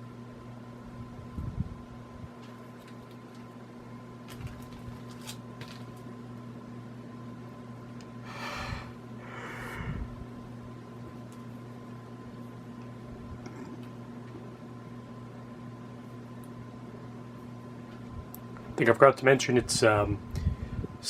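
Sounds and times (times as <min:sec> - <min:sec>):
ceiling fan motor hum: 0:00.0 - 0:21.0
person sniffing or breathing: 0:08.2 - 0:10.2.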